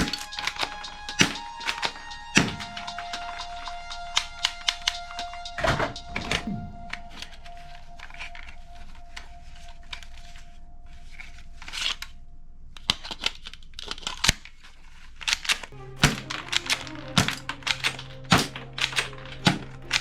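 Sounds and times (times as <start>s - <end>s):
sharp clicks: 0.0s - 7.4s.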